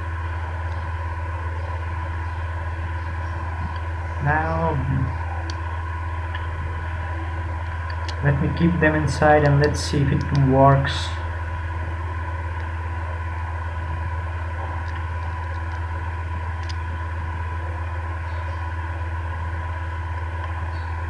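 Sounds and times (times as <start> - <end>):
steady low hum: 0.0 - 21.0
faint clicks: 16.6 - 16.8.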